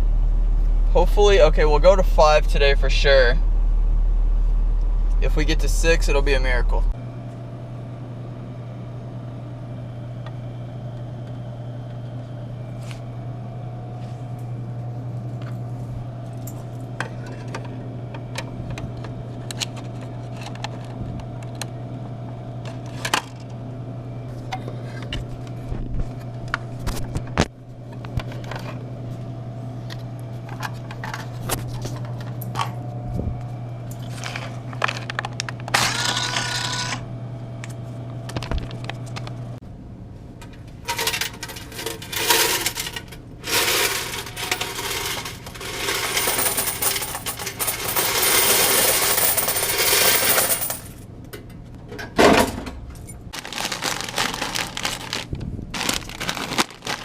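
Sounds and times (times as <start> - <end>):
low electrical hum: 0.0 - 57.0
coins and metal clinking: 40.9 - 51.0.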